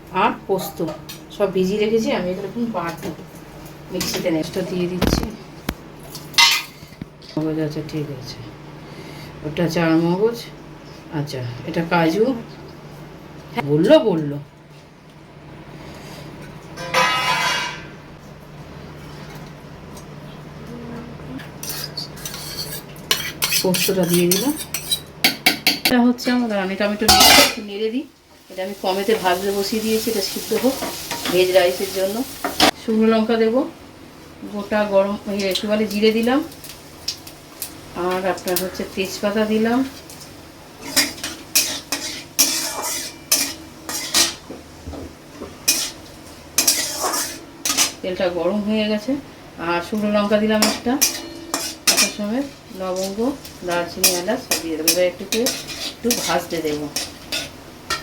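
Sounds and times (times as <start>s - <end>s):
metal utensils clinking on pan: 6.4s - 6.8s, 16.8s - 17.8s, 21.6s - 25.9s, 27.1s - 27.7s, 39.9s - 44.4s, 46.6s - 48.0s, 50.0s - 58.0s
spoon scraping bowl: 21.6s - 25.1s, 40.8s - 44.4s, 46.6s - 47.9s, 55.3s - 57.5s.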